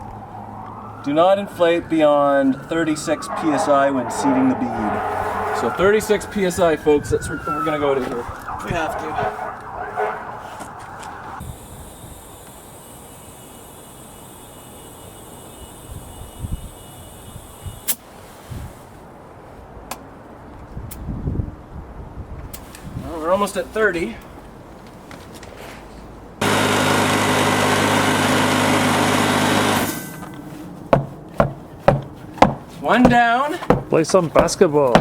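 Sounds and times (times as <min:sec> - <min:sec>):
air hissing into a tire: 0:11.4 - 0:19.0
low thumps: 0:30.9 - 0:35.0
sharp knock: 0:30.9 - 0:35.0.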